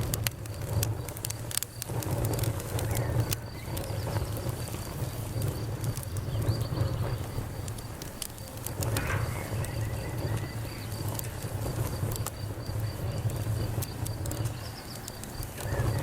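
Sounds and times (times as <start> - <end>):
campfire crackling and popping: 0.0 - 16.0
crickets chirping: 0.0 - 16.0.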